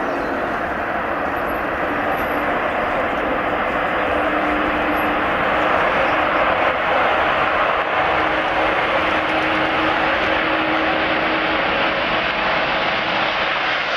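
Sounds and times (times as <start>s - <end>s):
airliner engines running: 0.0s - 13.9s.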